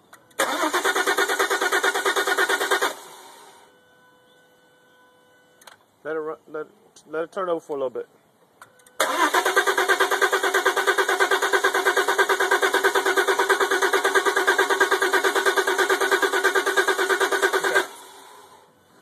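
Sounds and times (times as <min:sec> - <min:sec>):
car engine cranking: 0:00.2 - 0:03.3, 0:08.8 - 0:18.5.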